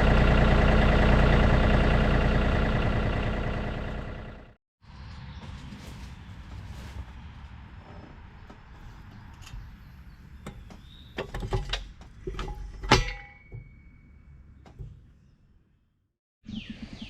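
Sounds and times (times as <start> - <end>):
low steady rumble: 0.0 - 4.6
metal clanking: 10.4 - 15.1.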